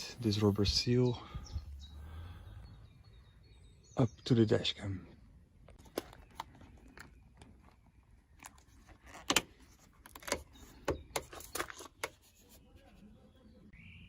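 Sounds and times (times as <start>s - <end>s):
cable clicks and scraping rustles: 5.7s - 12.4s.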